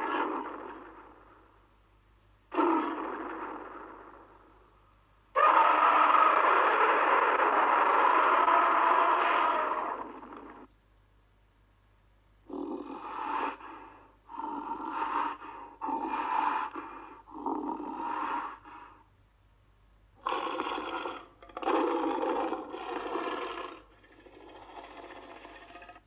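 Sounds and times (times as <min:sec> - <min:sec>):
gorilla growls and snorts: 0:00.0 - 0:01.5, 0:02.5 - 0:04.6, 0:12.5 - 0:18.9, 0:20.2 - 0:26.0.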